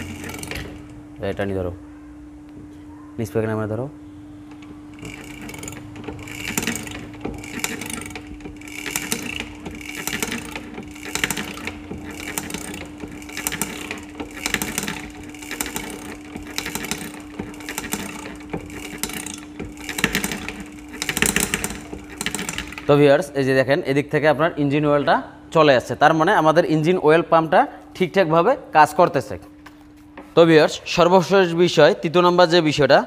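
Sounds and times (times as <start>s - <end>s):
engine mechanical clicking strokes: 0.0s - 1.0s, 4.5s - 22.9s
steady hum: 0.0s - 28.9s.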